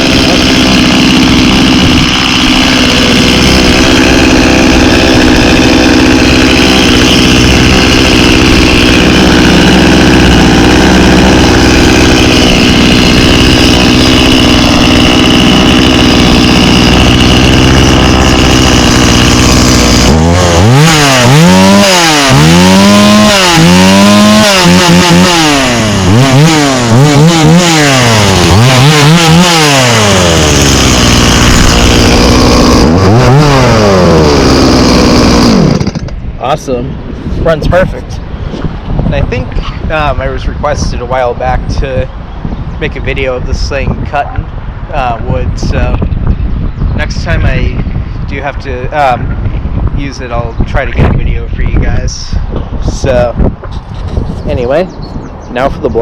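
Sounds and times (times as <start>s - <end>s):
chainsaw idling and revving: 0.0s - 36.6s.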